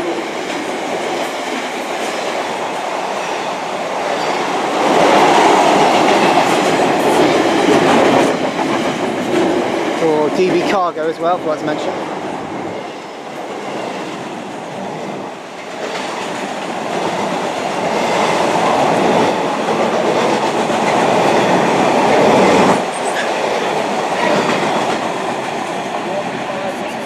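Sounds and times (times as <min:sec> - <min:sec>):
freight train rumble: 0:00.0 - 0:27.0.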